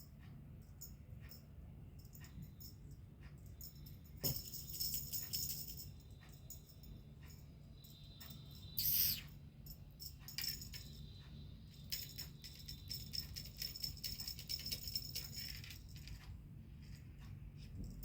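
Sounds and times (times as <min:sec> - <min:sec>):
light jingling and rattling: 0:00.0 - 0:18.0
steady low hum: 0:00.0 - 0:18.0.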